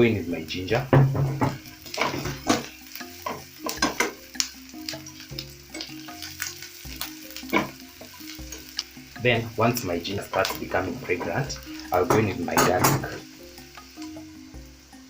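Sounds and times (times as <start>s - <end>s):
food sizzling in hot oil: 0.0s - 15.0s
spoon scraping a pan: 1.1s - 4.2s, 4.9s - 8.9s.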